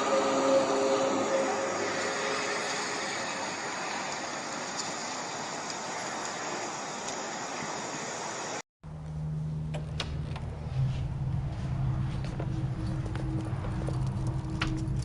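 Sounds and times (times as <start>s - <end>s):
faint droning tones: 0.0s - 15.0s
steady rushing rumble: 8.9s - 15.0s.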